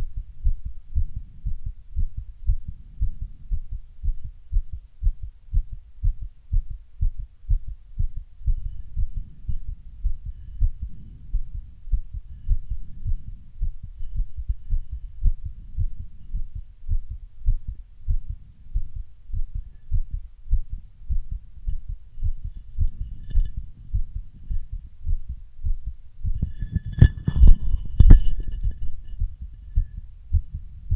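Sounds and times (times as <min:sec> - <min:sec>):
fast heartbeat thumps: 0:00.0 - 0:30.9
loud bumps and scrapes: 0:22.4 - 0:23.7, 0:26.4 - 0:29.2.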